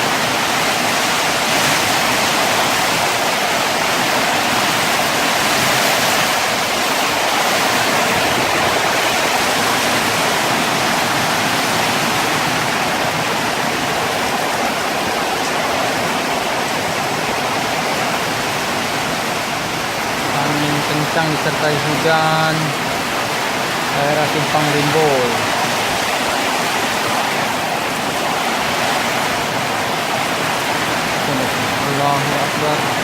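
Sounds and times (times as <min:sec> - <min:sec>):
heavy rain pouring: 0:00.0 - 0:33.0
strong wind: 0:00.0 - 0:33.0.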